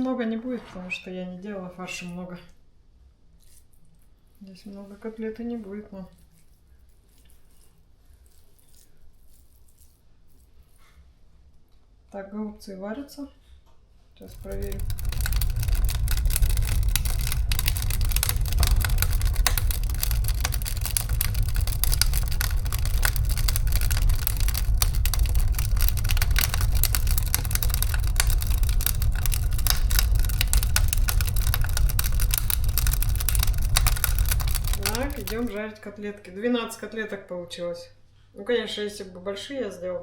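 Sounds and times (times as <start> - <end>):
low rumble: 14.2 - 35.6
cooking crackling and popping: 14.2 - 35.7.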